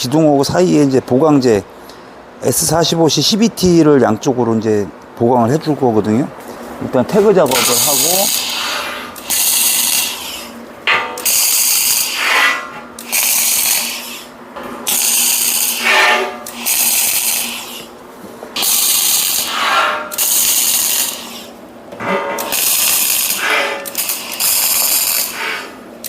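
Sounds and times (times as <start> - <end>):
welder arc crackling: 7.1 - 18.0, 18.6 - 25.8.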